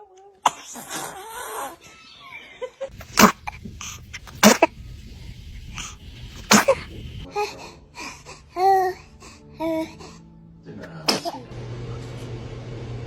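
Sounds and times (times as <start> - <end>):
baby sneezing: 0.4 - 1.8, 3.0 - 4.7, 6.4 - 7.6, 11.0 - 11.5.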